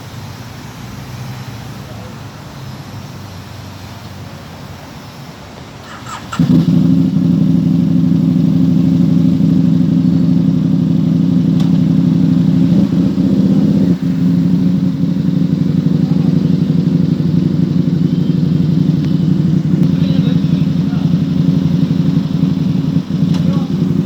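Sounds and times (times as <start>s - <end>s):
motorcycle engine idling: 5.4s - 24.0s.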